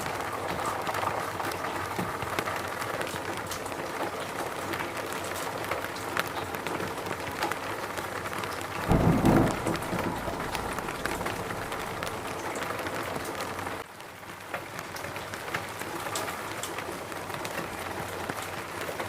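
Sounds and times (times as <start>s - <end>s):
rain falling: 0.0s - 19.0s
low rumble: 8.8s - 12.6s.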